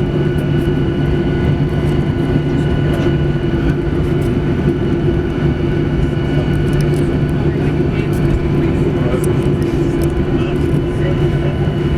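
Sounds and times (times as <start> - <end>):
aircraft cabin drone: 0.0 - 11.9.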